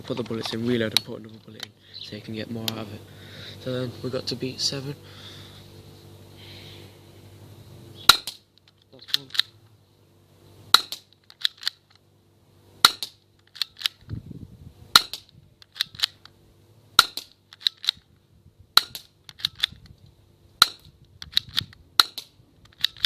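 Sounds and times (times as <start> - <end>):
quiet gun clicks: 0.2 - 1.8, 8.1 - 9.6, 10.8 - 12.0, 12.8 - 14.2, 15.0 - 16.4, 17.0 - 18.1, 18.8 - 20.0, 20.6 - 23.0
bb gun shot crack: 8.1 - 8.4.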